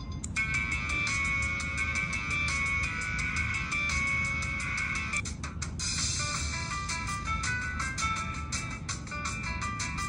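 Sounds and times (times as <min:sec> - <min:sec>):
electronic phone ringtone: 0:00.0 - 0:05.2.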